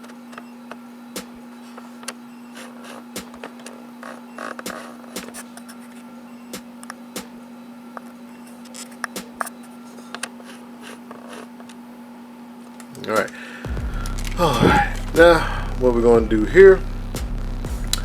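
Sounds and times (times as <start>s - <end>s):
steady low hum: 0.0s - 18.0s
plastic parts clicking and knocking: 2.0s - 5.4s.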